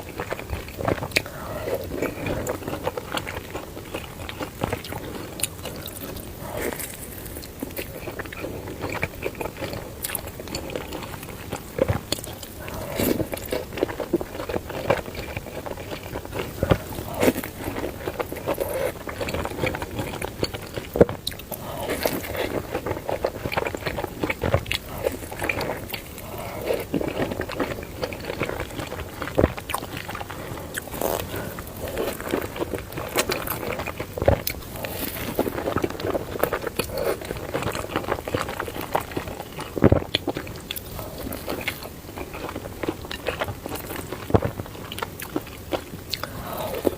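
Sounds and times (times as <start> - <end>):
chewing and biting noodles: 0.0 - 46.9
wet mouth sounds: 11.9 - 46.9.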